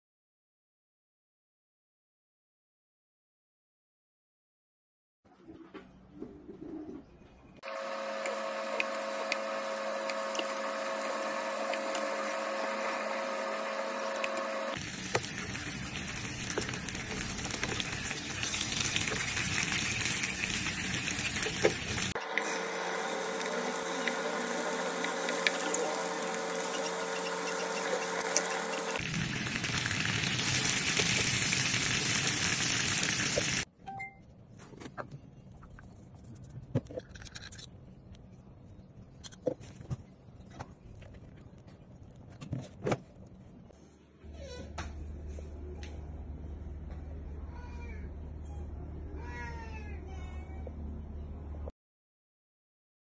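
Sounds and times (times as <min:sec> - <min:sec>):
steady motor hum: 0:07.6 - 0:19.2, 0:20.4 - 0:29.1
food sizzling in a pan: 0:14.8 - 0:33.7.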